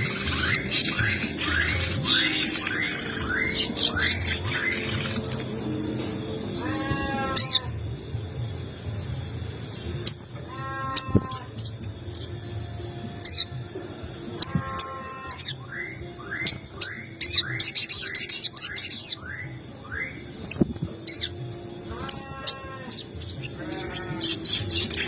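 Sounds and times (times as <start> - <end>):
buzzy bird call: 0.0 - 5.7
birds chirping: 0.0 - 25.0
repeated sweeping bird notes: 0.0 - 25.0.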